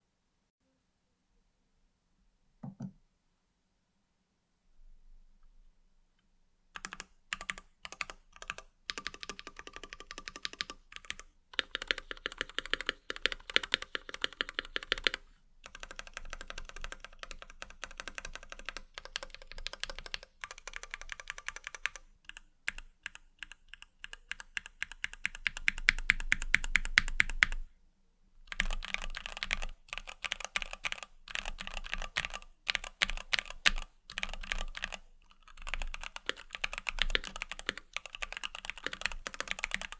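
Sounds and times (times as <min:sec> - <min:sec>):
mechanical keyboard typing: 0:06.8 - 0:27.6, 0:28.5 - 0:39.9.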